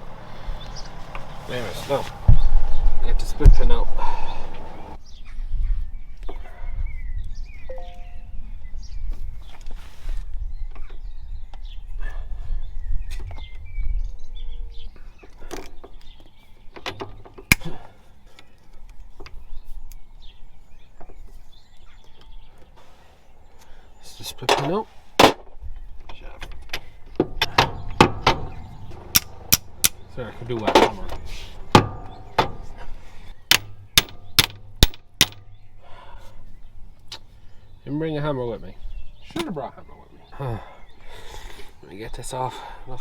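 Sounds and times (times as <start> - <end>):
low rumble: 0.0 - 5.0
birds chirping: 0.0 - 43.0.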